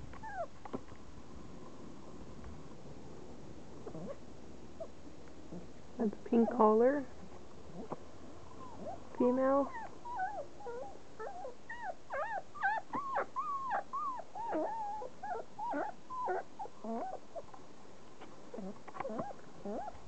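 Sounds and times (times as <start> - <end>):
puppies crying: 9.7 - 17.4, 18.6 - 20.0.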